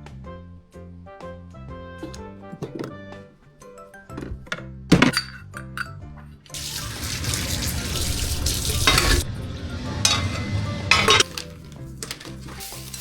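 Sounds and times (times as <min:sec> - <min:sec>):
background music: 0:00.0 - 0:13.0
water running into sink: 0:06.6 - 0:13.0.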